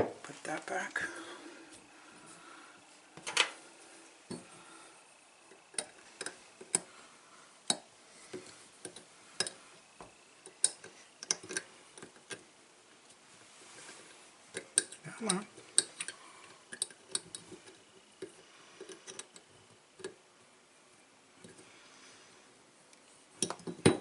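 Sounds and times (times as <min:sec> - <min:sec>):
faucet parts clicking and tapping: 0:10.4 - 0:12.4, 0:14.5 - 0:19.4, 0:23.4 - 0:24.0.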